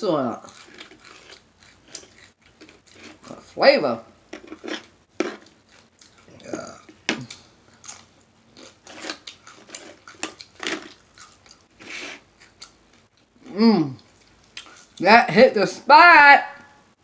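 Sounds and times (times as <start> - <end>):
chewing with lip smacks: 0.4 - 3.3, 5.4 - 11.8, 14.0 - 15.0.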